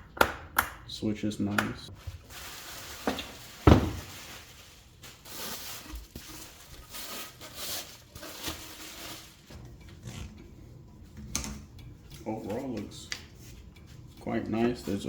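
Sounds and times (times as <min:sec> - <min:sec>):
plastic parts rustling and knocking: 0:02.0 - 0:09.7.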